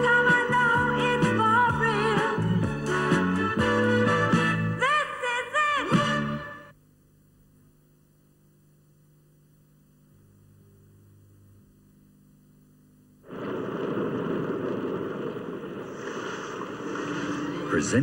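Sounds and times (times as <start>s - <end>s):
faint steady hum: 0.0s - 18.0s
loud rushing noise: 13.3s - 18.0s.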